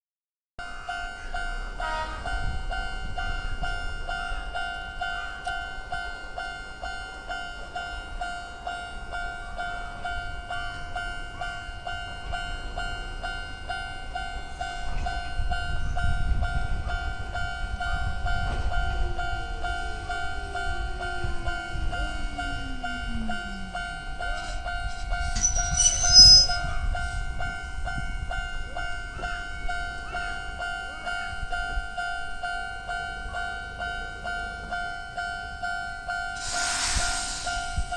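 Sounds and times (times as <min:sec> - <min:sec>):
level crossing alarm ringing: 0:00.6 - 0:37.9
train rumbling: 0:00.6 - 0:37.9
brief shrill sound: 0:25.4 - 0:26.6.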